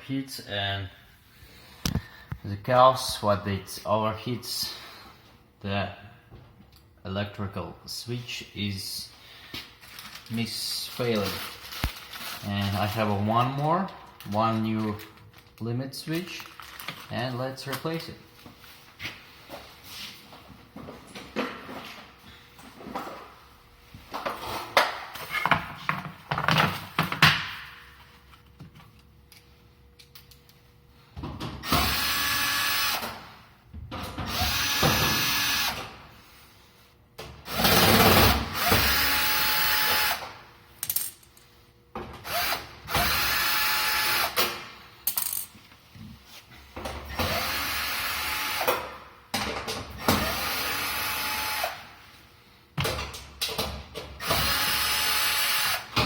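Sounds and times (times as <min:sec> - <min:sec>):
cordless drill motor whine: 0:31.7 - 0:33.0, 0:34.3 - 0:35.8, 0:38.6 - 0:40.2, 0:42.3 - 0:44.4, 0:47.3 - 0:48.7, 0:50.2 - 0:51.8, 0:54.2 - 0:55.8.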